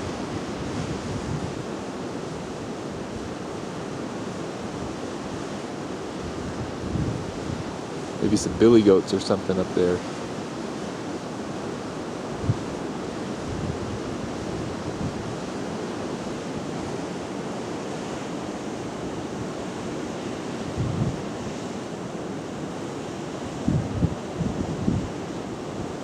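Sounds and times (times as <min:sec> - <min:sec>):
wind hissing on microphone: 0:00.0 - 0:26.0
wind buffeting thumps: 0:23.6 - 0:25.1.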